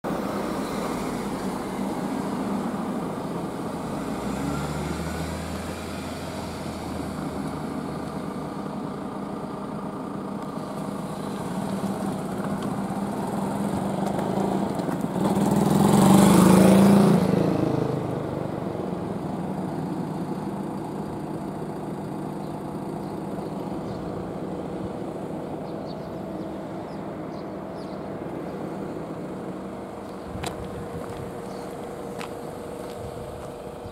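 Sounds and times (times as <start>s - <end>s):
motor vehicle driving past: 3.9s - 8.1s.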